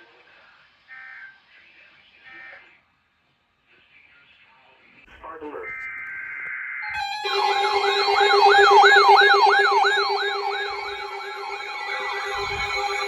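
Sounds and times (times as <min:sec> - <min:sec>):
warbling electronic siren: 0:06.8 - 0:13.0
steady low drone: 0:07.0 - 0:13.0.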